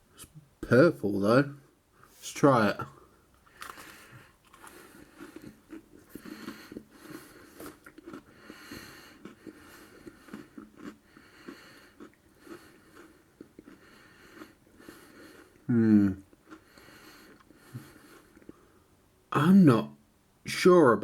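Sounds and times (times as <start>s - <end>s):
cookie crunching: 3.4s - 18.6s
chewing mouth sounds: 3.5s - 18.6s.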